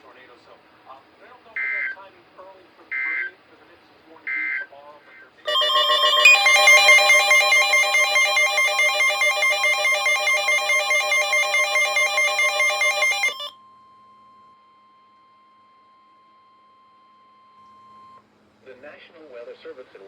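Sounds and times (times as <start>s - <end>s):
electronic emergency alert tone: 5.5s - 13.6s.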